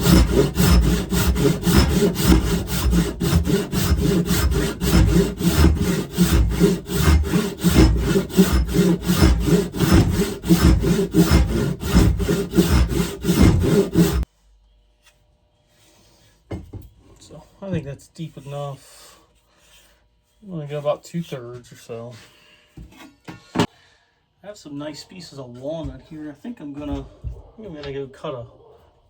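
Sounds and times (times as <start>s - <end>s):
hand saw cutting wood: 0.0s - 14.3s.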